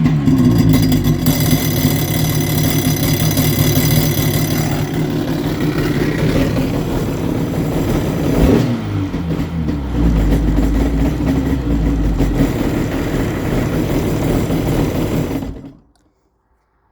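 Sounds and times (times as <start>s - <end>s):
jet ski engine idling: 0.0s - 15.9s
jet pump noise: 9.9s - 15.8s.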